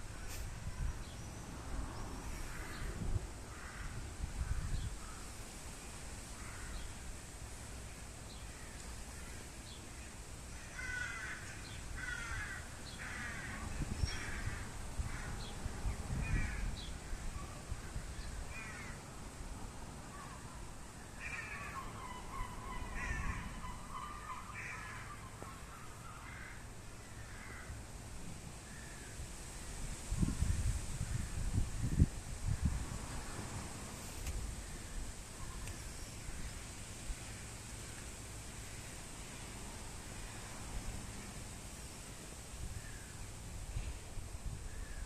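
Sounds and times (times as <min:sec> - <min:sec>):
wind buffeting microphone: 0:00.0 - 0:05.3, 0:11.8 - 0:20.8, 0:27.3 - 0:37.2, 0:42.5 - 0:45.0
harsh rasping bird calls: 0:08.4 - 0:15.6, 0:20.2 - 0:27.7.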